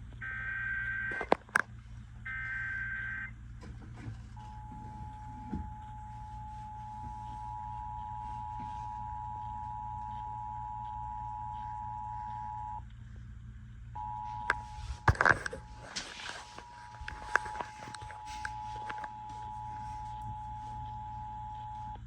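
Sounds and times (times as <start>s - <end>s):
low hum: 0.0s - 22.0s.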